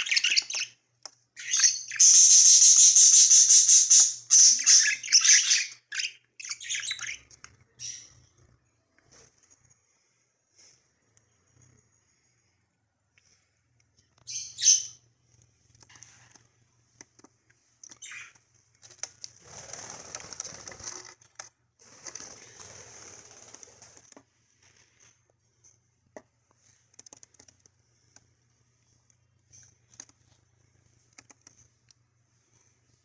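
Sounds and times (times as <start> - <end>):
budgerigars chirping: 0.0 - 0.8, 1.4 - 8.2
wing fluttering and scuffling: 15.7 - 25.2, 26.6 - 27.8.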